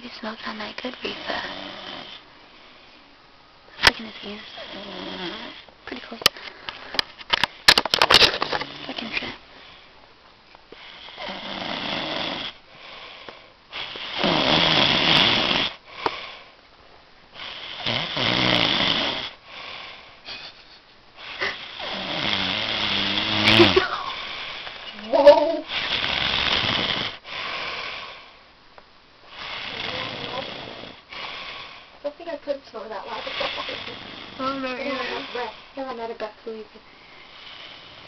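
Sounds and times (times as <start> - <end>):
man snoring heavily: 1.2 - 2.2, 4.5 - 5.6, 10.8 - 16.5, 17.4 - 20.1, 21.2 - 24.7, 25.6 - 28.4, 29.3 - 31.9, 33.1 - 35.6, 37.2 - 38.0.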